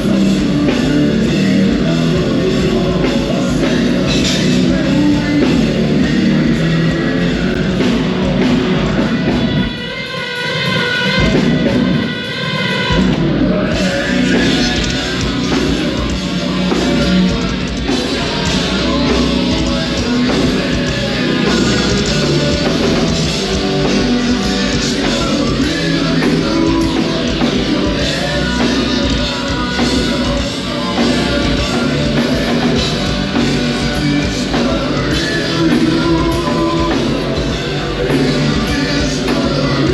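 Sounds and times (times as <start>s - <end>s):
bass: 0.0s - 39.9s
drum kit: 0.0s - 39.9s
electric guitars: 0.0s - 39.9s
person singing: 0.0s - 39.9s.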